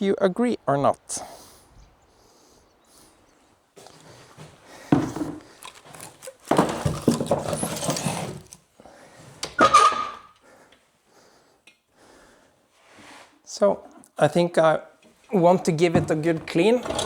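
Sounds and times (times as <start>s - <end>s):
hard objects scraping and knocking: 4.8s - 8.6s, 15.7s - 17.0s
short squeaky scrape: 7.4s - 8.5s, 9.6s - 10.4s.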